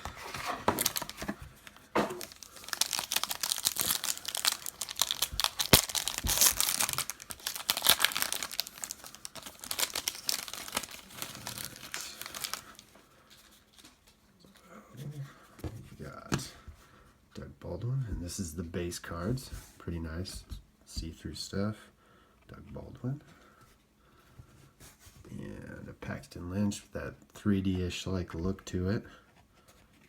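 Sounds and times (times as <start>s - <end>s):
plastic packaging tearing and crinkling: 0.0s - 12.9s.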